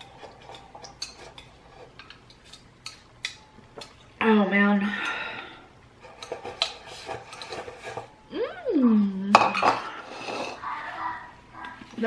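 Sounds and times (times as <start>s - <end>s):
utensils clinking against bowl: 0.0s - 4.1s, 6.0s - 8.2s, 9.4s - 10.6s.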